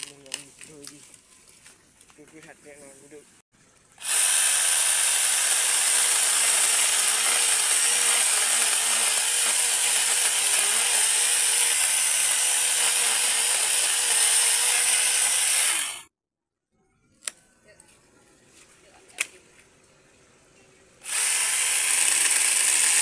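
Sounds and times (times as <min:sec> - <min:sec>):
chainsaw cutting bamboo: 0:04.0 - 0:16.1, 0:21.0 - 0:23.0.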